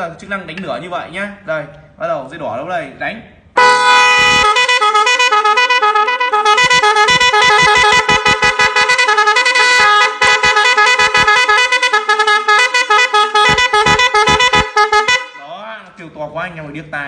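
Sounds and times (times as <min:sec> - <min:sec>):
electric melody horn warbling: 0:03.6 - 0:15.6.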